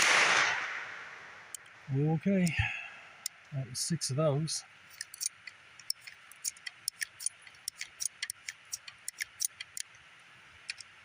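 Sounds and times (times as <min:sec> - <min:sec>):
revolver cylinder clicking: 0:04.9 - 0:11.0.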